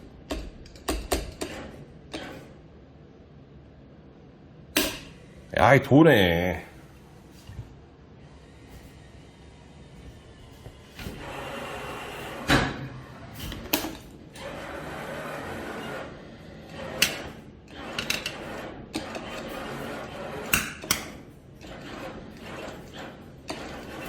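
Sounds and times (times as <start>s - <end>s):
claw mechanism clunks: 0.2s - 2.6s, 10.5s - 24.0s
claw machine motors running: 8.2s - 24.0s.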